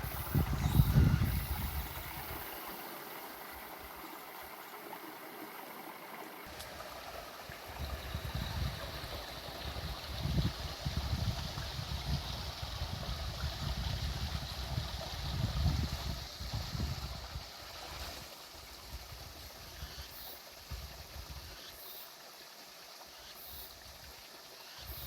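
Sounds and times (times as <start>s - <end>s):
wind buffeting microphone: 0.0s - 2.6s, 7.6s - 17.5s
water flowing and trickling: 0.0s - 25.0s.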